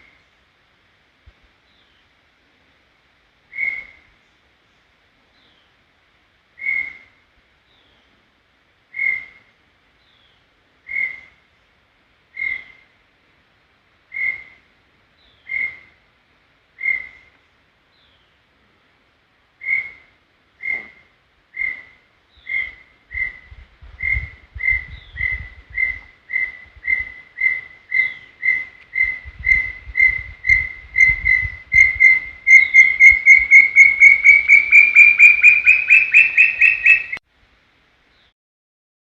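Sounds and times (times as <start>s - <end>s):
bird whistling notes: 24.0s - 37.2s.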